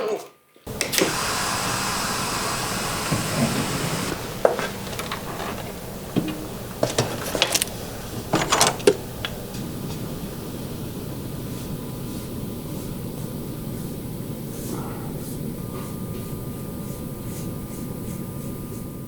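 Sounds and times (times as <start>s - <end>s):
power tool running: 0.7s - 11.2s
sharp clicks and knocks: 2.9s - 10.0s.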